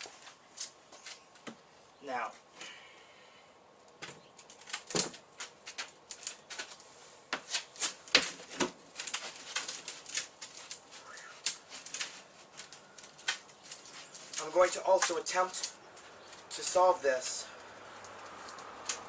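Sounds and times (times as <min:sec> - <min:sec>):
sharp plastic clicks: 0:18.0 - 0:19.0.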